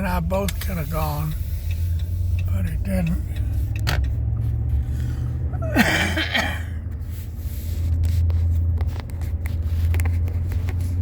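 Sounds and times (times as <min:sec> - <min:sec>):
car interior driving drone: 0:00.0 - 0:11.0.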